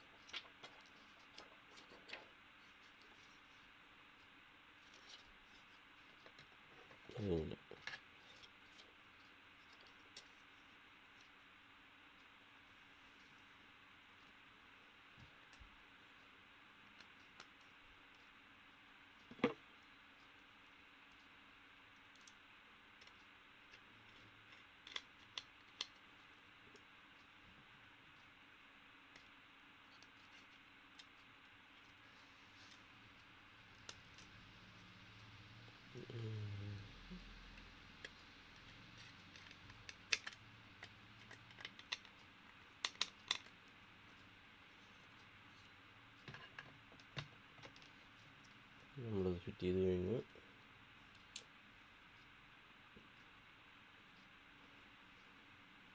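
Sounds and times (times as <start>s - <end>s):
faint steady hum: 0.0s - 55.9s
low room hiss: 0.0s - 55.9s.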